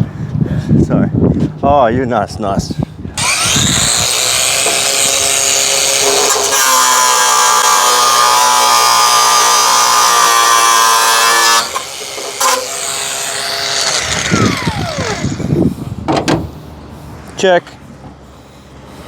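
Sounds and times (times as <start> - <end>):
power tool running at high speed: 3.2 - 15.5
low knocks: 16.0 - 16.5.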